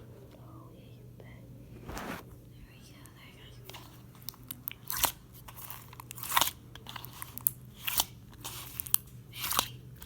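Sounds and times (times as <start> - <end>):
wet slime squishing: 3.6 - 10.0.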